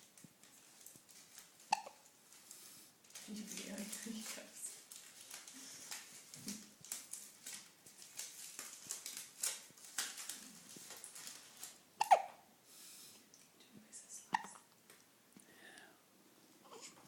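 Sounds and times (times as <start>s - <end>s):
pet hiccupping: 1.7s - 2.0s, 12.0s - 12.5s, 14.3s - 14.7s.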